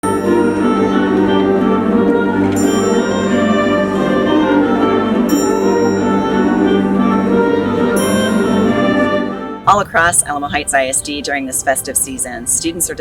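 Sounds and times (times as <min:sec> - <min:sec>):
festive orchestral music: 0:00.0 - 0:10.2
bright ringing accent: 0:05.3 - 0:07.1.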